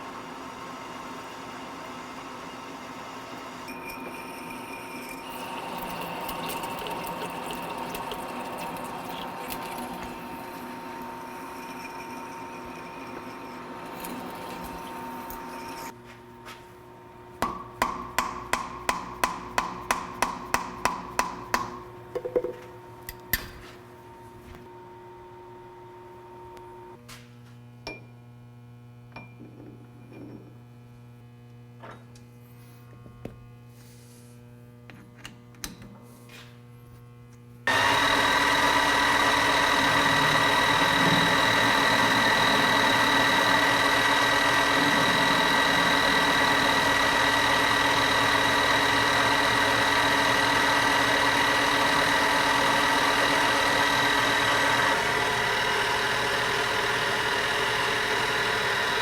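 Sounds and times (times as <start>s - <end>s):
machine tool motor whining: 37.7s - 59.0s.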